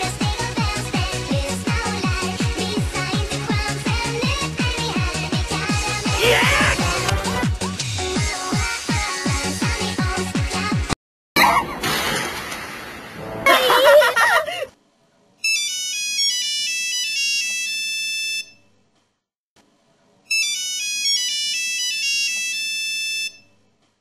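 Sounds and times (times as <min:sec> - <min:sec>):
phone ringtone beeping melody: 0:15.4 - 0:18.6, 0:20.3 - 0:23.5.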